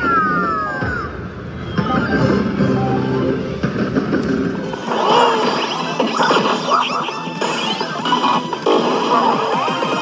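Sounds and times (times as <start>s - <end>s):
electronic slot machine music: 2.0s - 10.0s.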